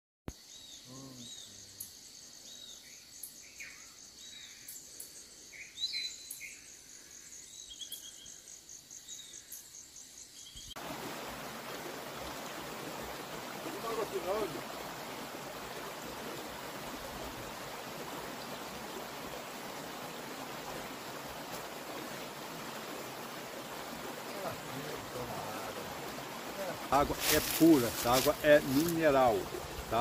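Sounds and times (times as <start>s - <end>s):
insects droning: 0.3s - 30.0s
stream rushing: 10.8s - 30.0s.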